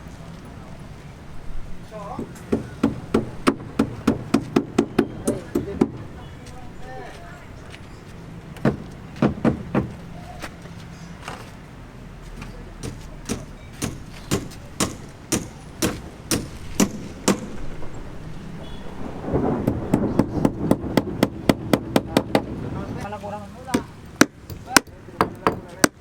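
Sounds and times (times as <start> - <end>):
hammer blows: 2.2 - 6.3, 12.4 - 17.8.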